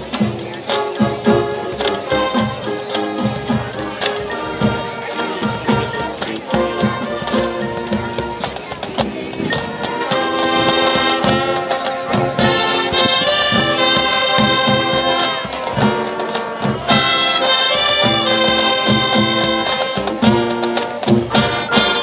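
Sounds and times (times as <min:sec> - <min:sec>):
brass chords: 0:00.0 - 0:22.0
drum beats: 0:00.0 - 0:22.0.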